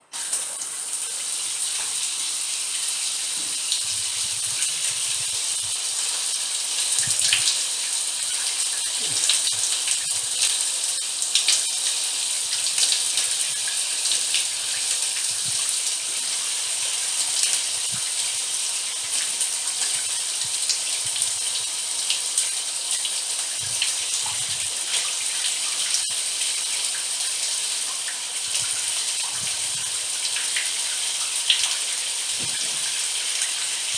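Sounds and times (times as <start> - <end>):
shower water spraying: 0.0 - 33.9
water splashes and drips: 0.0 - 33.9.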